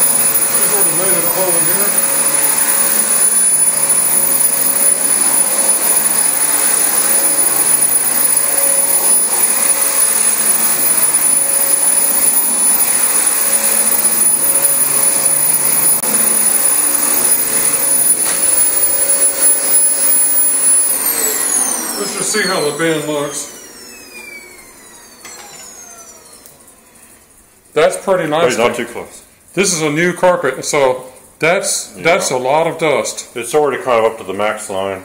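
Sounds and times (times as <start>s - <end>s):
vacuum cleaner motor whining: 0.0s - 27.3s.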